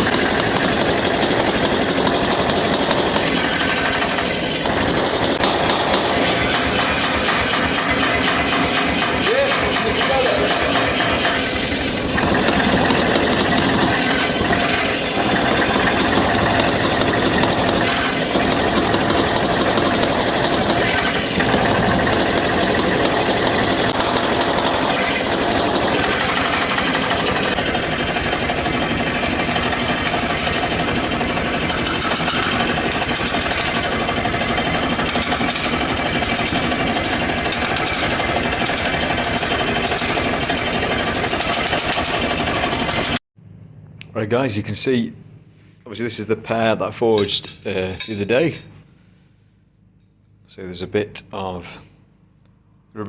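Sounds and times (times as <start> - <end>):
power hammer striking hot steel: 0.0 - 43.2, 47.1 - 48.5.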